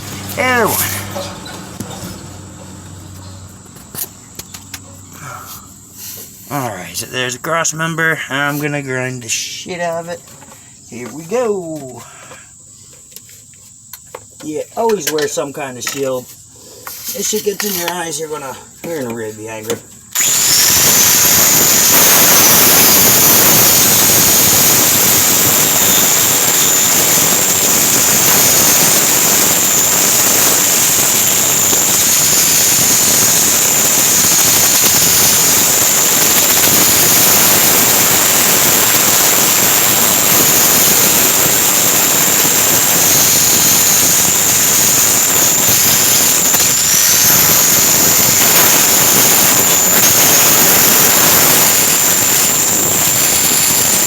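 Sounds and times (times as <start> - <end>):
angle grinder grinding steel: 0.0 - 5.4, 20.2 - 54.0.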